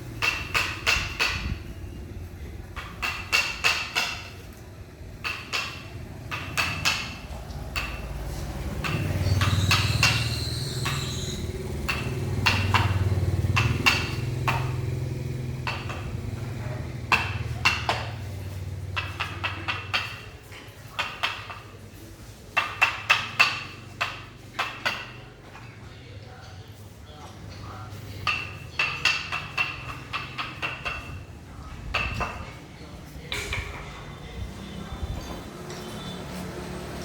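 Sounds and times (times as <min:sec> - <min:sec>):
mallet striking chisel: 0:00.2 - 0:01.6, 0:02.8 - 0:04.5, 0:05.2 - 0:18.3, 0:18.9 - 0:20.3, 0:20.9 - 0:21.6, 0:22.6 - 0:25.6, 0:28.2 - 0:31.3, 0:31.9 - 0:32.5
engine hum: 0:04.7 - 0:20.1, 0:27.3 - 0:37.0.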